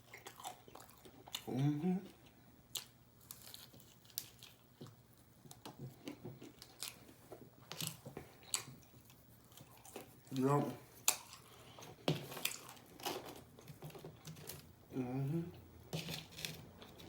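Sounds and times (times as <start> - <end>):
person chewing crunchy food: 0.0 - 17.0
person humming: 1.5 - 2.1, 14.9 - 15.6.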